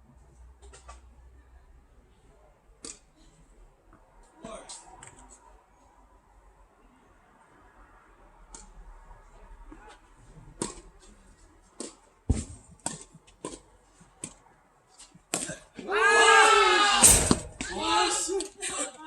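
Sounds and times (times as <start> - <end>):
tennis ball struck and bouncing: 10.6 - 10.8, 11.8 - 13.6.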